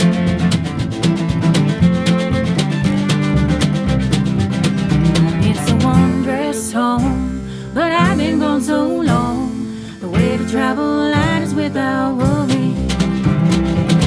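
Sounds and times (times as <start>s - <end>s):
low sustained string notes: 0.0s - 14.0s
plucked guitar: 0.0s - 14.0s.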